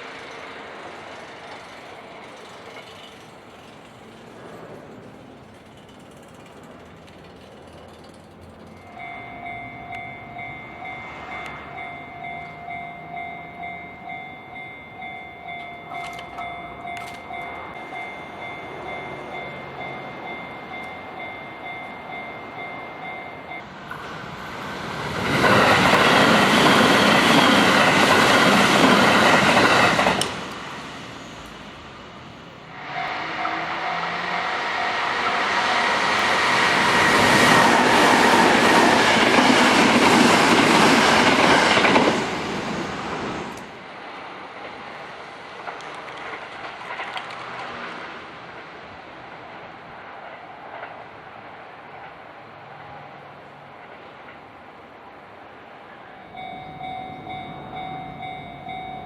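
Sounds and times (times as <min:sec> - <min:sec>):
electric train passing: 0:00.0 - 0:59.0
level-crossing bell clanging: 0:07.2 - 0:23.8, 0:25.2 - 0:31.7, 0:32.6 - 0:42.4, 0:55.9 - 0:59.0.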